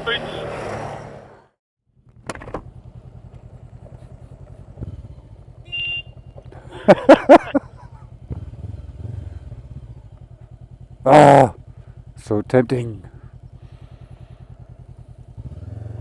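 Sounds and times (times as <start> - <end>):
motorcycle engine idling: 2.0 - 16.0.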